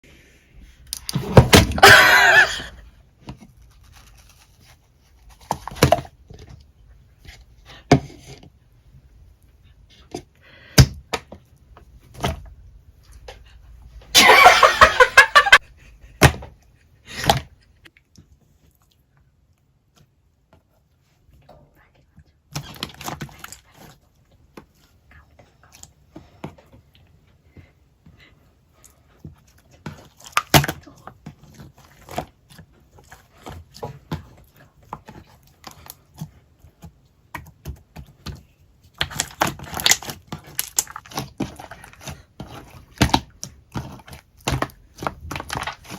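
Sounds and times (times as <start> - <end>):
slime squelching: 28.6 - 45.9.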